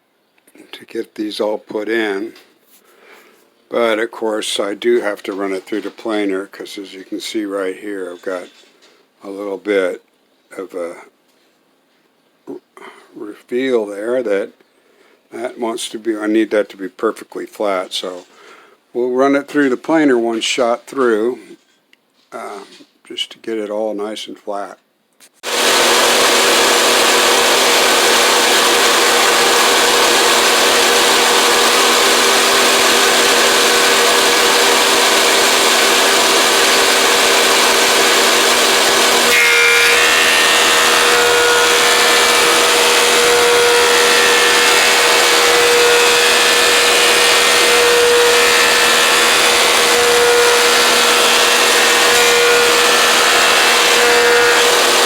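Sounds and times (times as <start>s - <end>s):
thickness planer whining: 25.4s - 55.0s.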